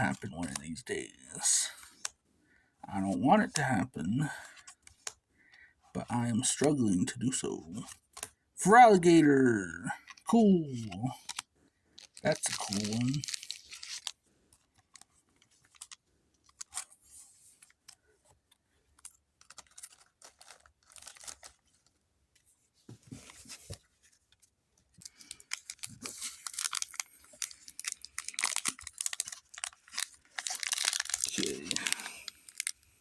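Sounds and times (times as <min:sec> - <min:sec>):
trading cards rustling and clicking: 0:00.0 - 0:00.6, 0:07.8 - 0:18.0, 0:18.9 - 0:21.9, 0:23.0 - 0:32.8
foil wrapper crinkling and tearing: 0:09.9 - 0:14.2, 0:19.0 - 0:21.9, 0:25.0 - 0:32.8.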